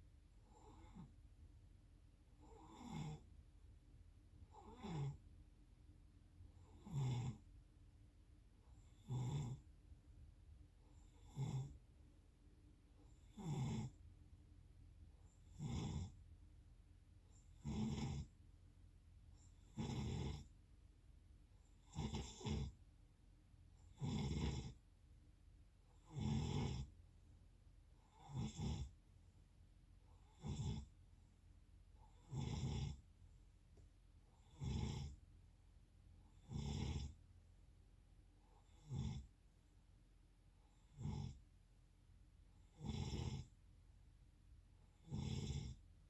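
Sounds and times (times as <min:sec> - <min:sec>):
rough snoring: 0:00.5 - 0:01.1, 0:02.4 - 0:03.3, 0:04.5 - 0:05.2, 0:06.6 - 0:07.4, 0:08.8 - 0:09.6, 0:10.9 - 0:11.8, 0:13.1 - 0:14.0, 0:15.4 - 0:16.2, 0:17.5 - 0:18.3, 0:19.6 - 0:20.5, 0:21.8 - 0:22.8, 0:23.8 - 0:24.8, 0:26.0 - 0:27.0, 0:28.1 - 0:29.0, 0:30.2 - 0:31.0, 0:32.0 - 0:33.0, 0:34.4 - 0:35.2, 0:36.3 - 0:37.2, 0:38.6 - 0:39.3, 0:40.8 - 0:41.4, 0:42.7 - 0:43.6, 0:45.0 - 0:45.8.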